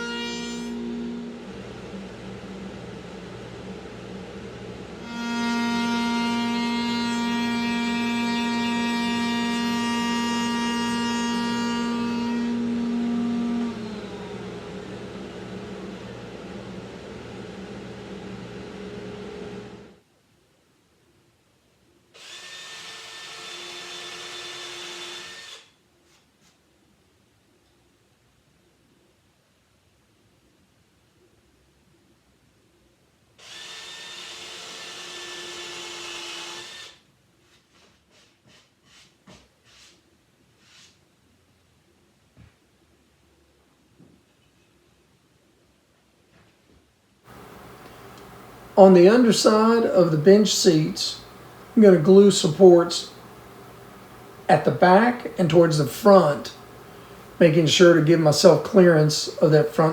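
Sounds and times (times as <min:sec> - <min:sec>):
electric router whining: 0:00.0 - 0:19.9
quieter machine whir: 0:00.0 - 0:20.0
power tool motor running: 0:05.1 - 0:15.9, 0:22.2 - 0:25.7, 0:33.4 - 0:37.0.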